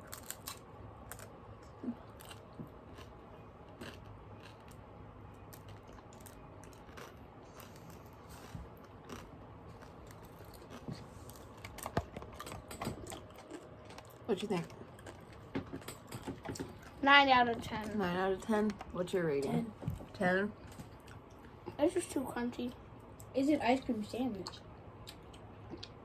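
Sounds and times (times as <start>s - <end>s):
person chewing frozen snack: 0.0s - 17.0s, 24.4s - 26.0s.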